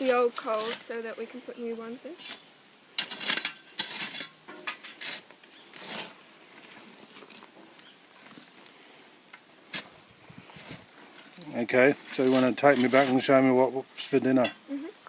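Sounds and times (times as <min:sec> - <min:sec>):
shovel scraping coals and ash: 0:00.0 - 0:14.6.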